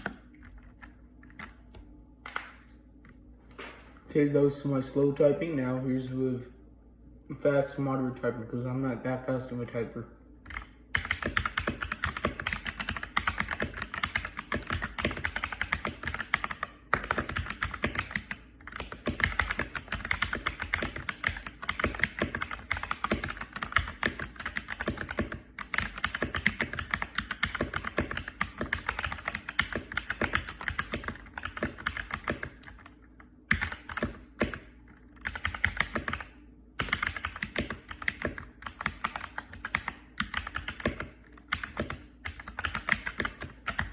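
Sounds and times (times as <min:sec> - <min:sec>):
mechanical keyboard typing: 0:10.5 - 0:43.9.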